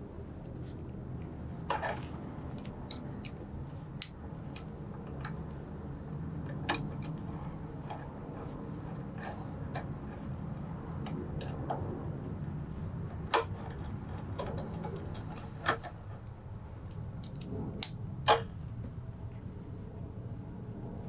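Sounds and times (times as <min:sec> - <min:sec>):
low steady hum: 0:00.0 - 0:21.0
metal clicks and taps of tools: 0:02.5 - 0:03.4, 0:04.0 - 0:05.4, 0:17.2 - 0:18.4.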